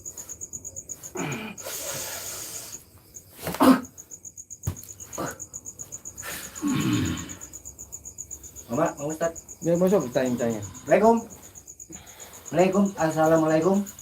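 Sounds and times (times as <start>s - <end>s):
cricket chirping: 0.0s - 14.0s.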